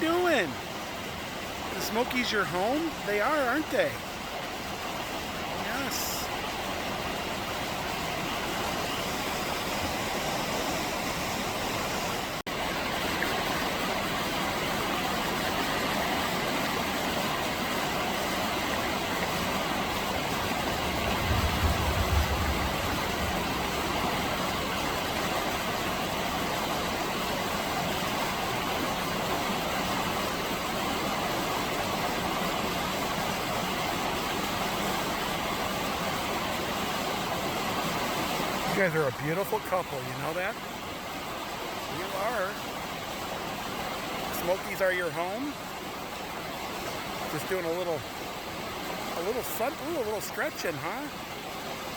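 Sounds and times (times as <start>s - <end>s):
river flowing over rocks: 0.0s - 51.9s
low rumble: 20.4s - 25.0s.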